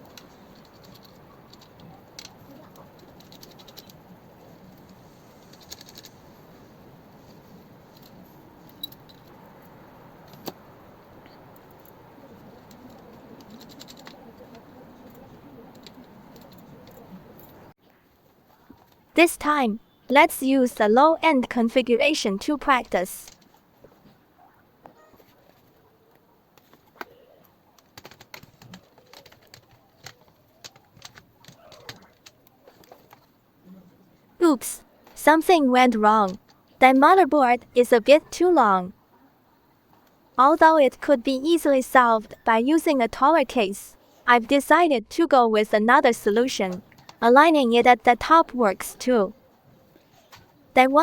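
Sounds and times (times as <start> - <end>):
computer parts clicking and tapping: 0.0 - 4.0, 12.6 - 14.7, 27.8 - 33.3
small metal clicks and jingling: 7.9 - 9.4.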